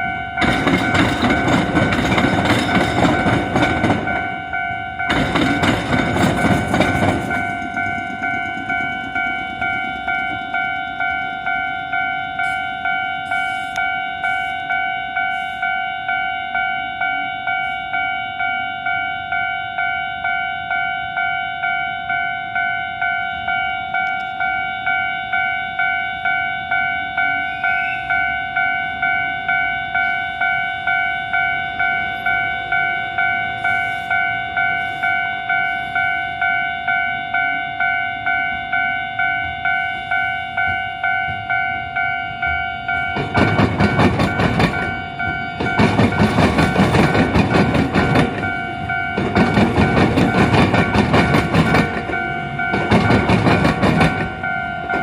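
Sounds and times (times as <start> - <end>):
level crossing bell ringing: 0.0 - 55.0
train wheels clattering over rails: 0.4 - 4.4, 5.0 - 13.0, 43.0 - 55.0.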